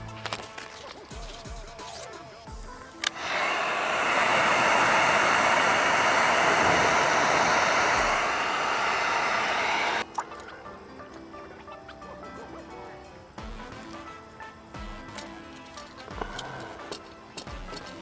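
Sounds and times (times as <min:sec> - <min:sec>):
heat gun blowing air: 0:03.0 - 0:10.0
heat gun switch click: 0:03.0 - 0:10.0.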